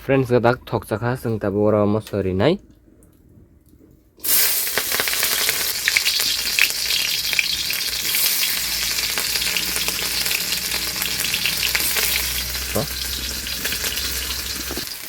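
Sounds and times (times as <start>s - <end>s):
vegetables sizzling in oil: 4.2s - 15.0s.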